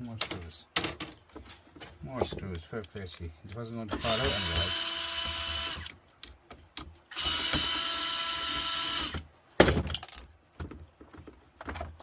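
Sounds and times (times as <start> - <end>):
cordless drill backing out screws: 3.9 - 5.9.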